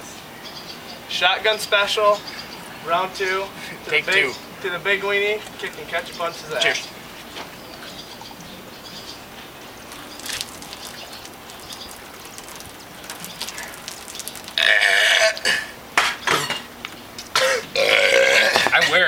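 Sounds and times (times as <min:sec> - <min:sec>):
person drinking: 0:09.9 - 0:15.8.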